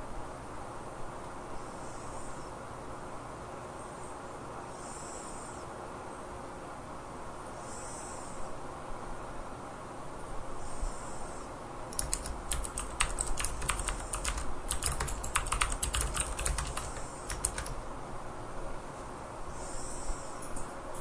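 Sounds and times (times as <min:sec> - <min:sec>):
keyboard key clicks: 0:11.9 - 0:17.8.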